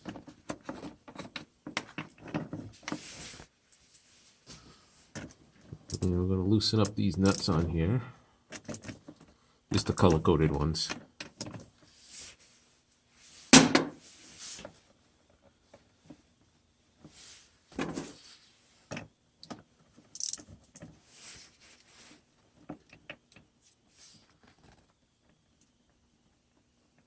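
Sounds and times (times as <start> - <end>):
metal tools clicking and clinking: 7.2 - 7.6.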